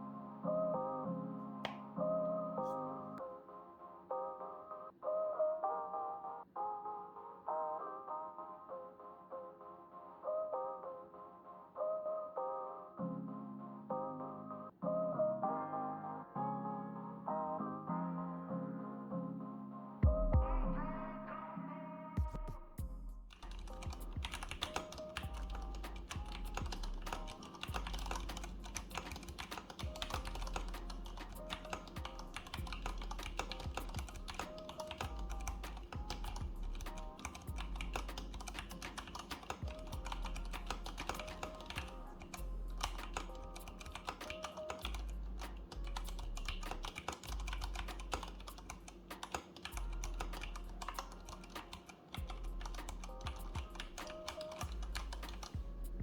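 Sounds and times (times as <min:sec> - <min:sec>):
beat with deep bass: 0:20.0 - 0:20.8, 0:22.2 - 0:48.8, 0:52.2 - 0:56.0
mechanical keyboard typing: 0:23.4 - 0:55.6.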